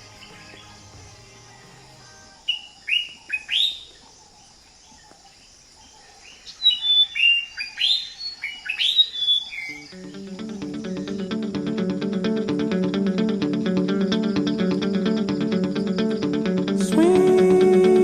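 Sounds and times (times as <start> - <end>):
bird singing rising notes: 6.7 - 18.0.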